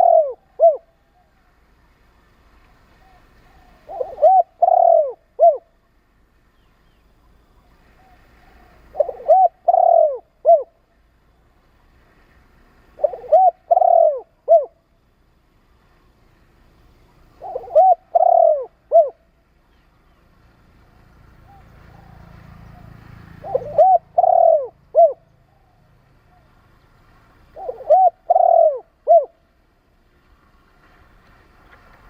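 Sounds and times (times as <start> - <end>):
dove cooing: 0.0 - 1.4, 3.0 - 5.7, 7.7 - 10.8, 12.9 - 14.8, 17.3 - 19.4, 21.4 - 26.6, 27.5 - 29.5.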